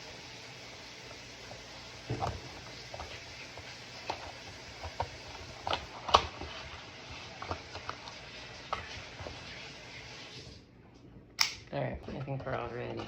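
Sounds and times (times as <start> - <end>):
packaging clicks and rustles: 2.1 - 9.4.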